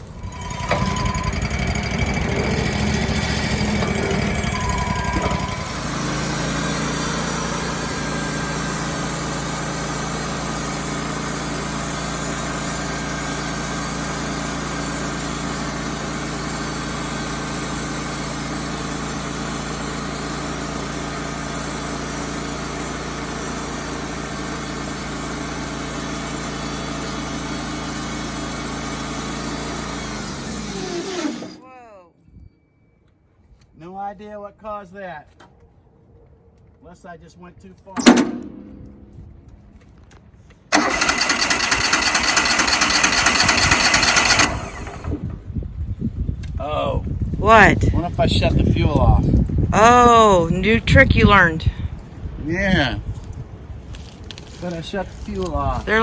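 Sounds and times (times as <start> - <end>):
sawmill engine running: 0.0 - 31.6, 38.0 - 40.1, 40.7 - 45.6, 54.0 - 56.0.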